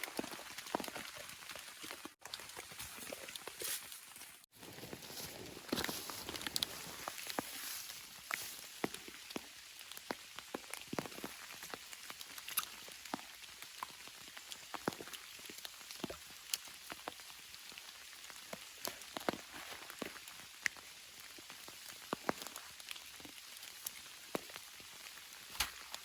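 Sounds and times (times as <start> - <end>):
rain falling: 0.0 - 2.7, 5.2 - 26.0
large raindrops tapping: 8.8 - 26.0.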